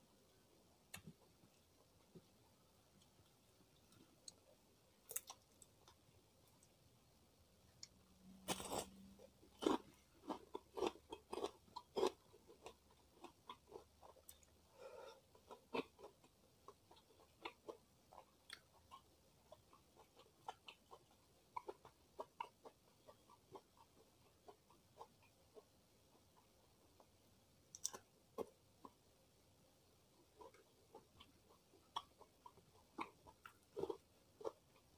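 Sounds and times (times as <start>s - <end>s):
crunchy bite: 8.4s - 9.0s
chewing crunchy food: 8.4s - 27.1s, 27.7s - 29.0s, 30.2s - 34.9s.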